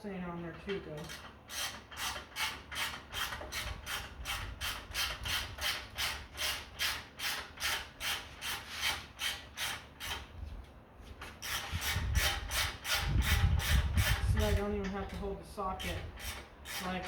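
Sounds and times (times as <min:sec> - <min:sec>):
ratchet rasping: 0:15.7 - 0:17.0.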